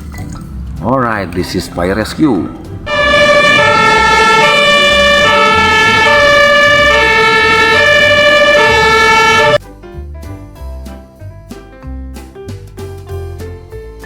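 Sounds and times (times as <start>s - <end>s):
toy two-tone siren: 2.9s - 9.6s.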